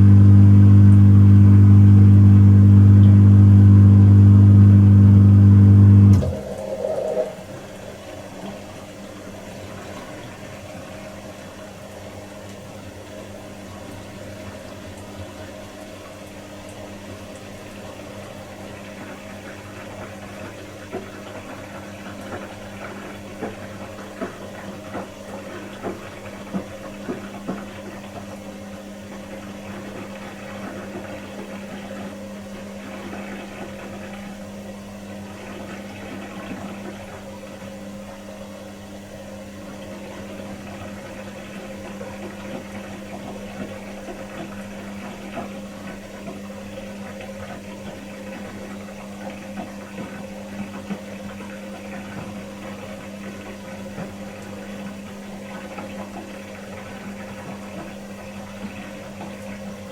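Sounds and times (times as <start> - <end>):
dishwasher pump humming: 0.0 - 12.7, 17.4 - 59.9.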